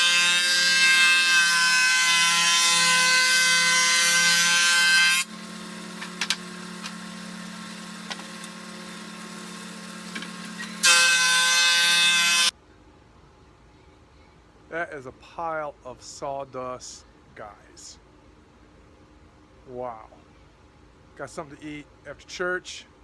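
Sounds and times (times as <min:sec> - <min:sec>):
thickness planer cutting wood: 0:00.0 - 0:12.5
planer running idle: 0:05.2 - 0:10.8.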